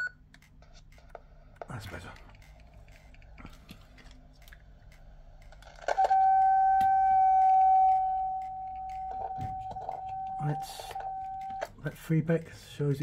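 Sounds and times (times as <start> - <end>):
microphone feedback howl: 6.0 - 11.7.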